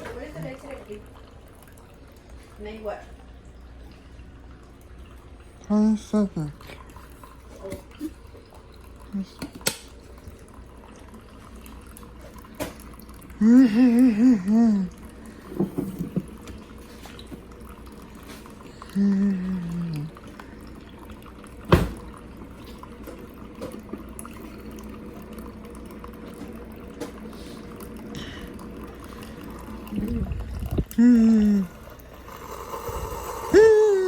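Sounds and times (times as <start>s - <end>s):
coffee pouring into cup: 0.0s - 34.0s.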